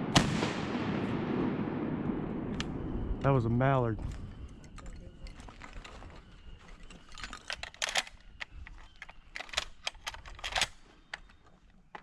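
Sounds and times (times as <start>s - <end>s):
sharp clicks: 6.8s - 12.0s.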